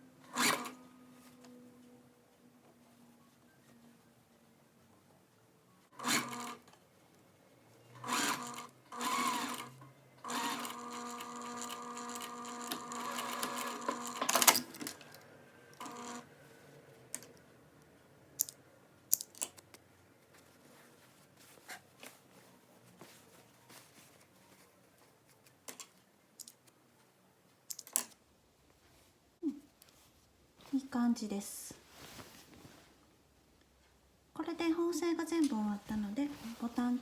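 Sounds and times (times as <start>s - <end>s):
sewing machine stitching: 0.2s - 0.8s, 5.9s - 6.7s, 8.0s - 15.0s, 15.8s - 16.3s.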